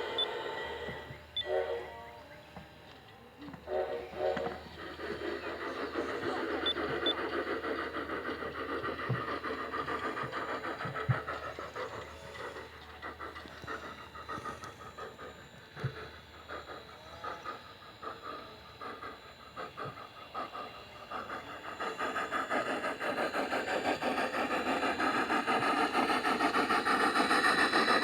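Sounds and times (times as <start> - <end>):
model train whistle: 0.0 - 2.3, 3.5 - 4.8
steam locomotive chuffing: 0.0 - 28.0.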